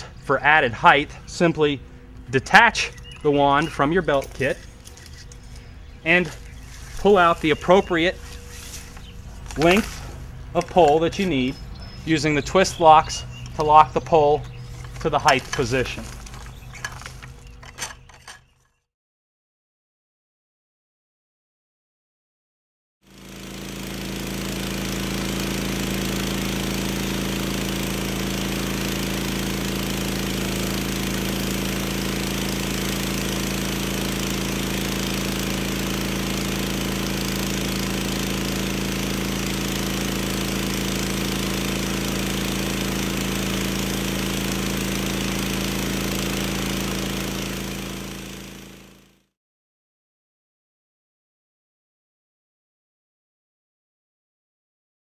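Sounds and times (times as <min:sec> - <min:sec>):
pressure washer spraying: 0:06.1 - 0:17.4, 0:23.2 - 0:48.8.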